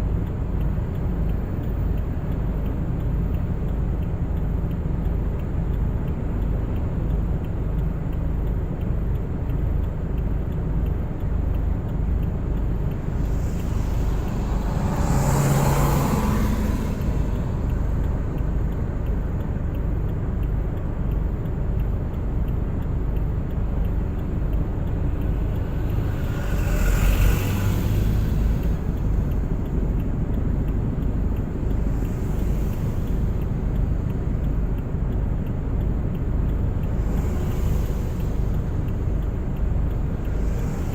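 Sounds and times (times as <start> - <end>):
car tyres and engine rumbling: 0.0 - 40.9
rushing swells: 12.3 - 19.7, 23.3 - 40.9.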